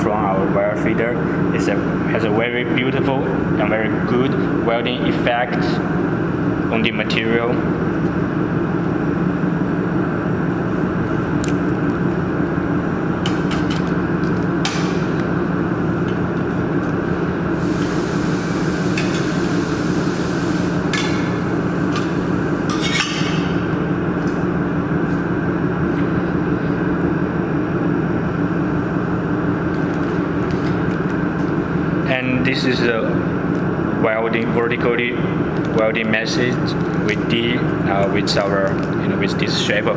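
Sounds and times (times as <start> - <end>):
mechanical hum: 0.0 - 39.9
hiss: 17.6 - 22.4.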